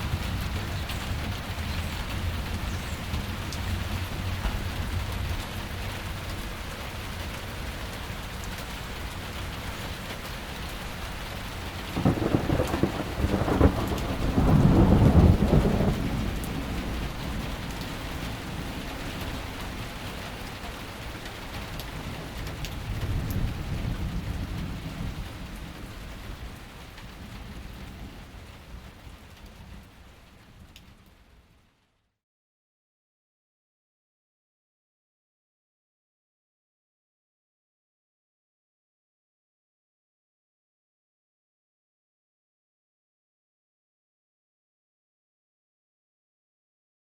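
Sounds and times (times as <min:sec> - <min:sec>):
steady rain falling: 0:00.0 - 0:32.0
rolling thunder: 0:11.9 - 0:19.5.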